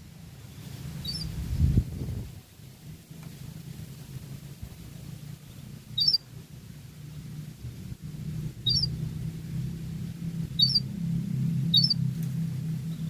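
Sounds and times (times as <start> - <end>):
steady low hum: 0.0 - 13.0
canary chirping: 1.0 - 1.4, 5.9 - 6.3, 8.6 - 9.0, 10.4 - 11.0, 11.6 - 12.1.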